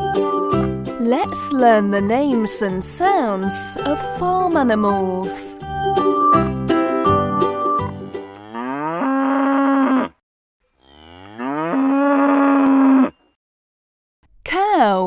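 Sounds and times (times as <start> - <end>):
cow mooing: 8.0 - 10.2, 10.8 - 13.2.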